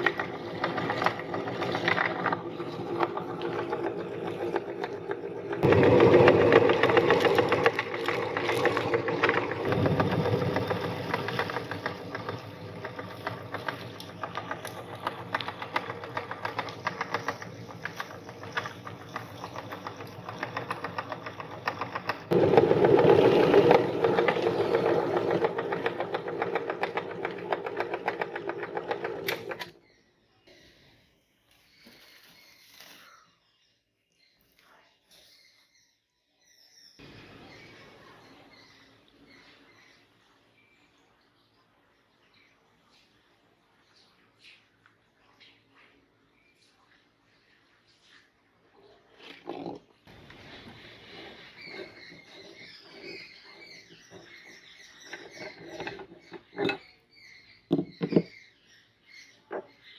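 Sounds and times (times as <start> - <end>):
meat grinder motor rattling: 0.0 - 29.8, 50.1 - 56.9.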